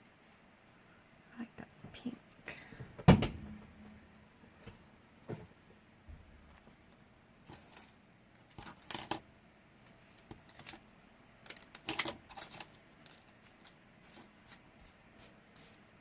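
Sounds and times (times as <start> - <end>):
paper rustling: 9.8 - 10.8, 11.5 - 14.6.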